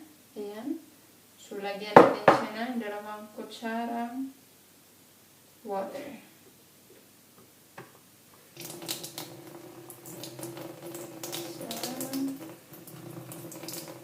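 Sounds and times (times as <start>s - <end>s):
kitchen tap running: 8.4s - 14.0s.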